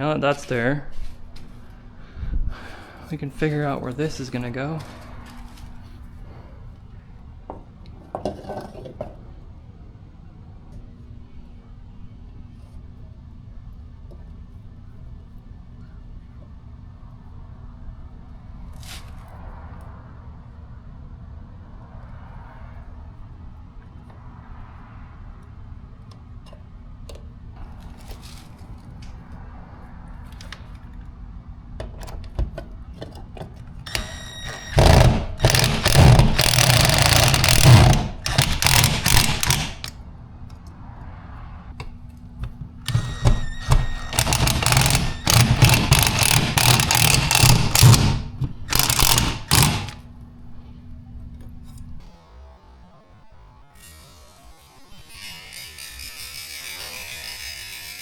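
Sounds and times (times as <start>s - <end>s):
power drill running under load: 33.9s - 39.9s, 42.9s - 50.0s, 53.8s - 58.0s.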